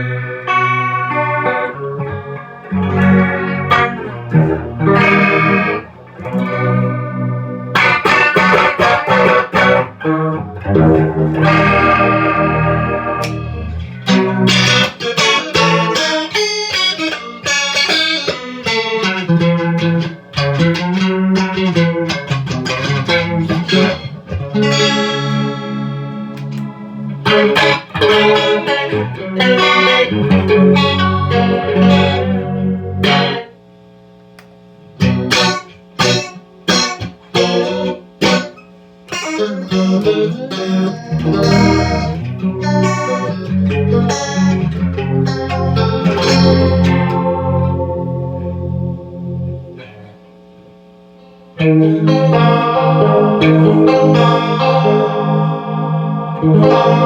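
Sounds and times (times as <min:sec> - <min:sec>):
electric guitar with chorus effect: 0:00.0 - 0:57.0.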